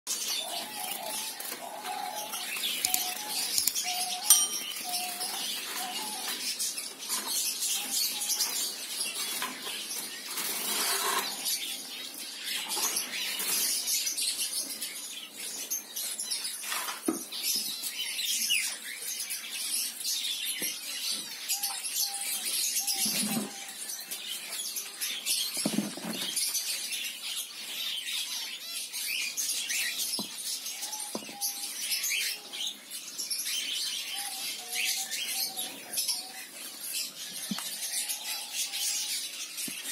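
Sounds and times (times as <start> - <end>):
zebra finches chirping: 0.1 - 16.9.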